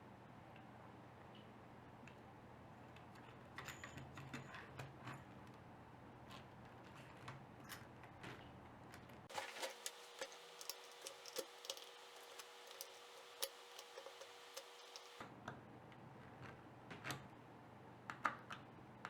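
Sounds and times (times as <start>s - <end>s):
faint steady hum: 9.3s - 15.2s
small plastic parts clicking: 9.3s - 15.2s.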